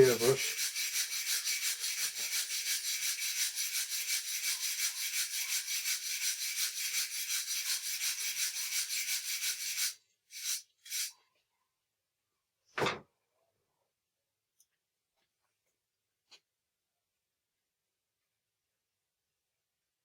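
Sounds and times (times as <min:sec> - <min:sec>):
wire brush scrubbing metal: 0:00.0 - 0:11.1.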